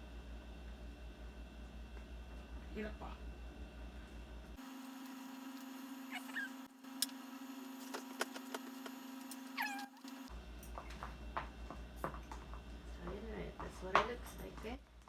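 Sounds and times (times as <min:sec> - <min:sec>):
steady low hum: 0:00.0 - 0:15.0
cat meowing: 0:06.1 - 0:06.6, 0:09.6 - 0:10.0.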